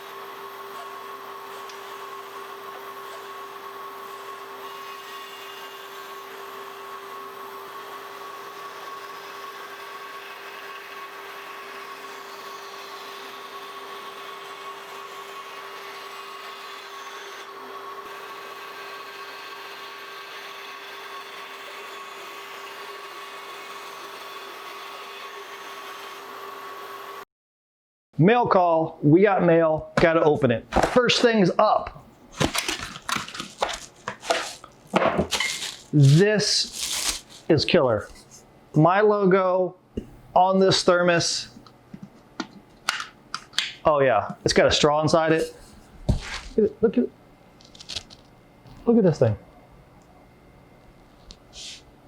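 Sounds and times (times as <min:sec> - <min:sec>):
power tool humming and whining: 0:00.0 - 0:27.2.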